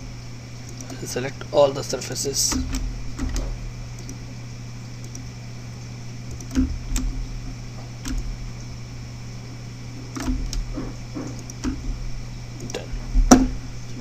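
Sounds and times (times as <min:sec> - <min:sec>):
low electrical hum: 0:00.0 - 0:14.0
computer mouse clicks: 0:00.6 - 0:01.0, 0:02.5 - 0:04.2, 0:05.0 - 0:05.3, 0:06.3 - 0:07.2, 0:08.0 - 0:08.3, 0:10.1 - 0:11.9.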